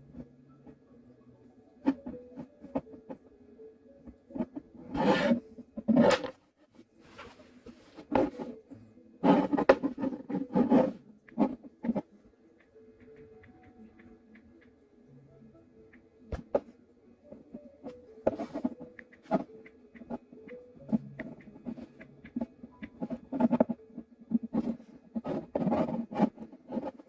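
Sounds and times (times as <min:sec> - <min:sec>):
small objects clicking and tapping: 0:12.6 - 0:14.8.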